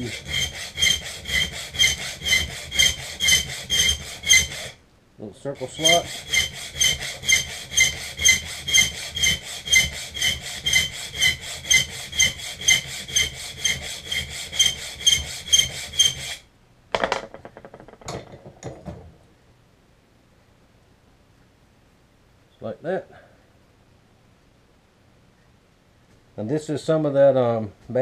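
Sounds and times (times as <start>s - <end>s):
hand file filing steel blade: 0.0s - 4.8s, 5.6s - 16.4s.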